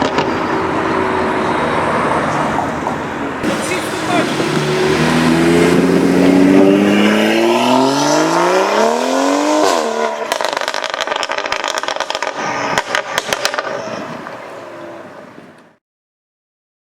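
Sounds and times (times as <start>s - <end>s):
car engine accelerating hard: 3.4s - 13.0s
exhaust pops and bangs: 9.6s - 13.8s.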